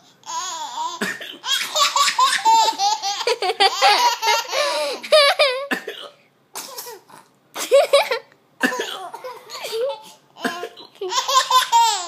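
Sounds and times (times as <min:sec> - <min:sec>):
baby laughing: 0:00.2 - 0:05.7, 0:09.0 - 0:12.0
person coughing: 0:01.0 - 0:01.4, 0:05.4 - 0:11.0.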